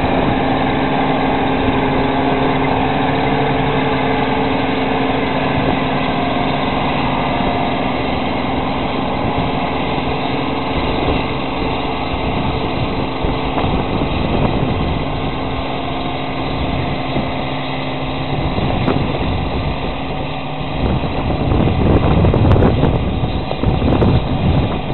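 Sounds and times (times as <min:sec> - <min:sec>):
combine harvester engine hum: 0:00.0 - 0:24.9
rough low rumble: 0:00.0 - 0:24.9.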